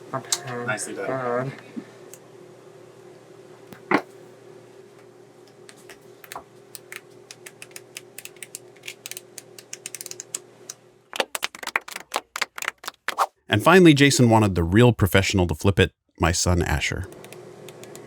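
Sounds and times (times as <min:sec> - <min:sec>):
flipbook pages flicking: 0:06.3 - 0:10.4, 0:11.2 - 0:13.3.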